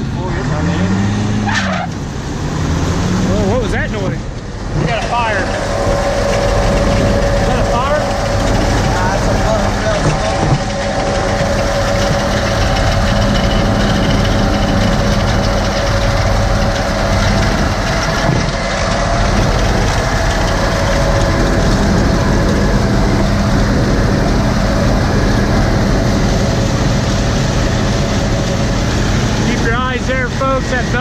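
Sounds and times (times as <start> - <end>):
combine harvester running: 0.0 - 31.0.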